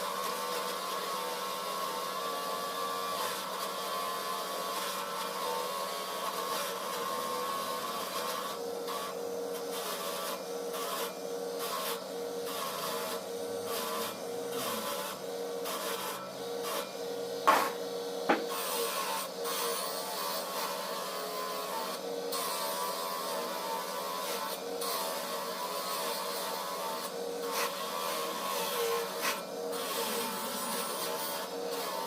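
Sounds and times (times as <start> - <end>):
small electric motor whirring: 0.0 - 32.0
sharp knocks: 17.5 - 18.6.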